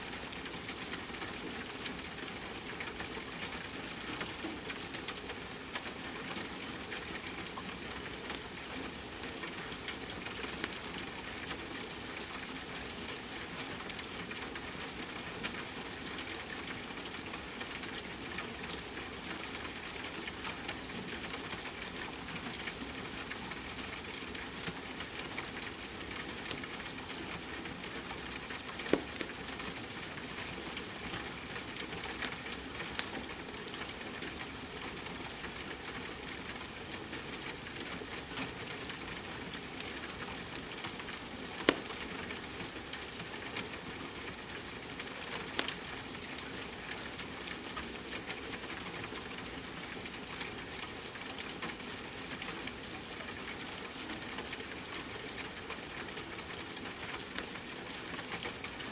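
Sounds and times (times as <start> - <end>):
wood fire crackling and popping: 28.8 - 29.4, 41.6 - 42.1.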